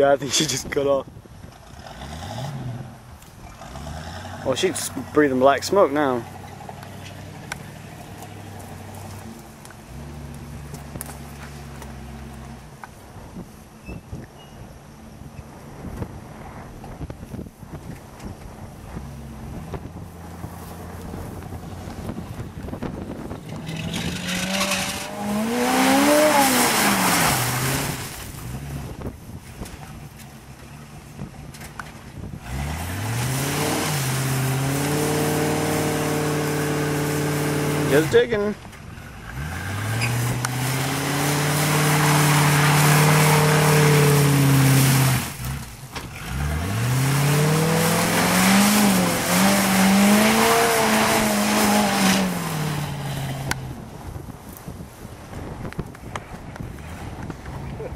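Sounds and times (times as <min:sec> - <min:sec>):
truck engine revving hard: 0:01.6 - 0:12.6, 0:19.0 - 0:29.0, 0:32.4 - 0:53.8
tyres spinning in mud: 0:21.0 - 0:53.6.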